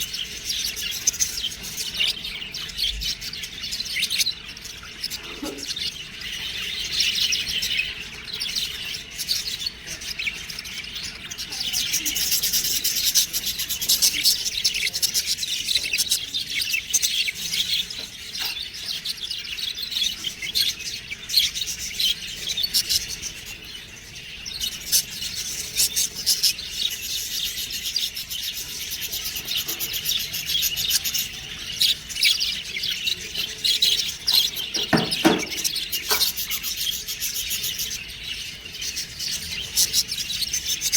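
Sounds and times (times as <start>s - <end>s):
budgerigars chirping: 0.0s - 40.9s
low knocks: 34.7s - 35.7s.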